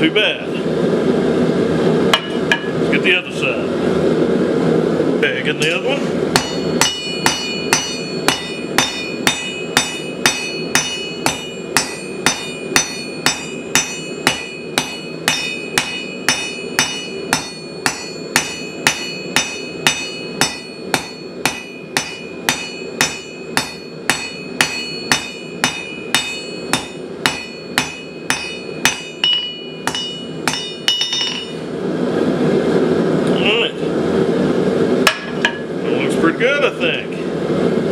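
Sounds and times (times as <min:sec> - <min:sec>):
hammer striking steel on anvil: 0:02.2 - 0:02.8, 0:06.3 - 0:31.6, 0:35.1 - 0:35.7.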